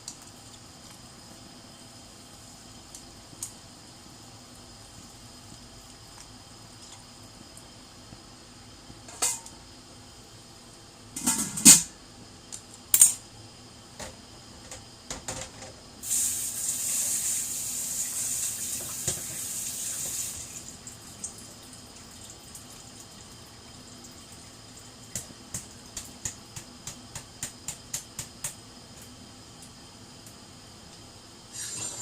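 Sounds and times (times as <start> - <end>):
dishes and utensils clinking: 11.2 - 11.9.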